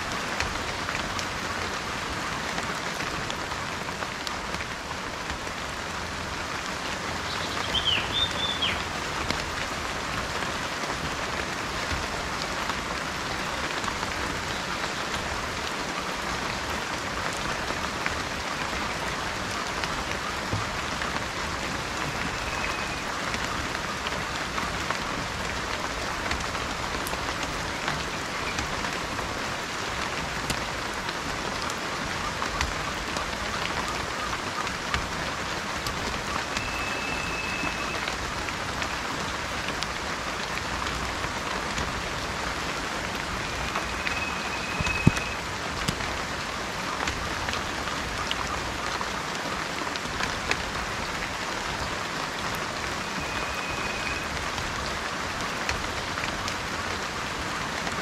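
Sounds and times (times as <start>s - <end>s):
rain falling: 0.0s - 58.0s
short high whistle: 43.7s - 45.4s.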